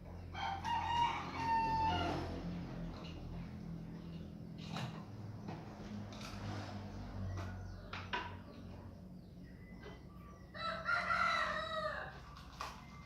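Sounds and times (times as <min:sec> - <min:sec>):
rooster crowing: 0:00.3 - 0:02.4, 0:10.6 - 0:12.2.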